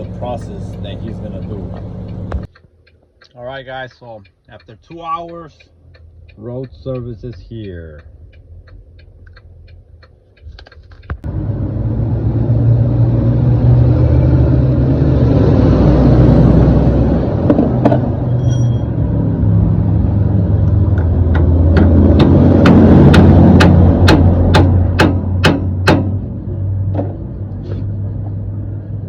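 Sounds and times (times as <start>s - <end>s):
soft regular ticking: 0.0s - 11.3s.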